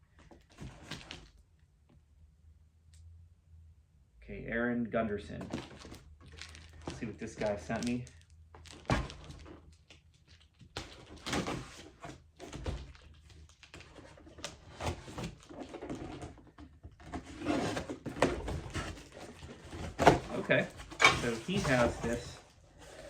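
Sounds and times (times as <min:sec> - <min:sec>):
packing rustling: 0:05.4 - 0:23.0
cardboard knocks and scrapes: 0:17.0 - 0:23.0.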